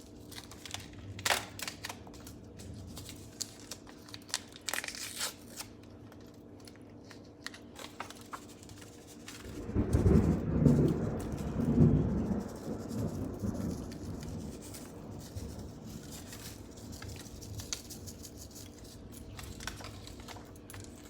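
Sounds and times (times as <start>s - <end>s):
packet crinkling and rustling: 0.0s - 21.0s
low rumble of thunder: 9.4s - 18.0s.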